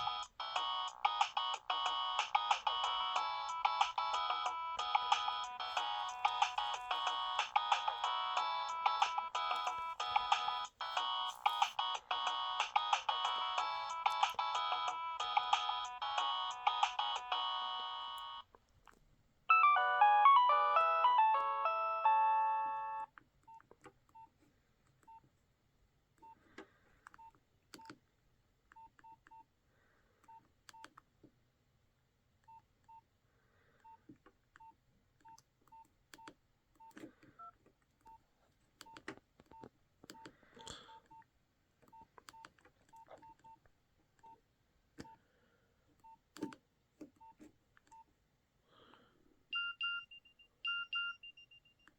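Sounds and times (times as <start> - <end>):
polyphonic phone ringtone: 0.0 - 18.4, 19.5 - 23.1, 49.6 - 51.7
keypad beeps: 49.6 - 51.9.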